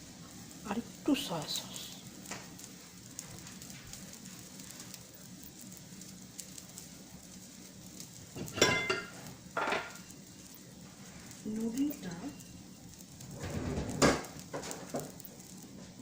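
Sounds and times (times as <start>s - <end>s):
soup bubbling in a pot: 2.0s - 16.0s
metal clink on pot: 8.4s - 10.0s.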